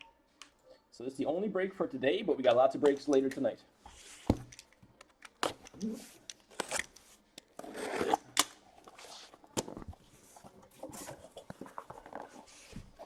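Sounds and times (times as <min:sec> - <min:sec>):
cardboard rustling and scraping: 0:08.9 - 0:13.0.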